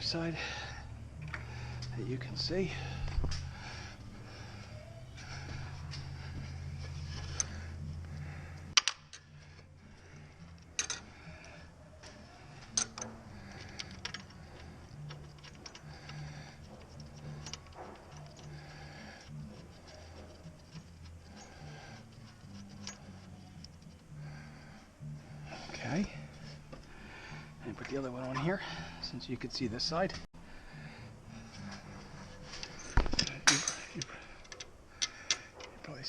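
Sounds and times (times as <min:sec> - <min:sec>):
low hum: 0:00.0 - 0:35.8
metallic clinks of bolts and tool: 0:10.5 - 0:11.1, 0:12.6 - 0:21.6, 0:22.2 - 0:24.0, 0:32.5 - 0:36.0.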